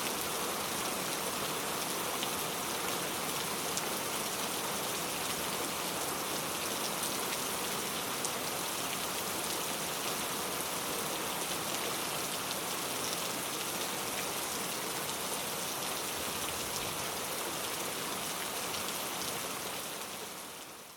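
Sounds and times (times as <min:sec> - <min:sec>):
steady rain falling: 0:00.0 - 0:20.9.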